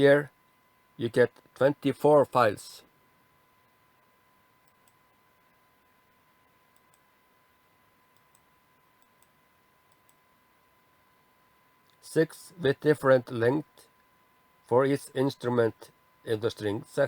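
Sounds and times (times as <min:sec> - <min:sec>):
computer mouse clicks: 0:04.6 - 0:05.0, 0:06.7 - 0:07.1, 0:08.1 - 0:10.2.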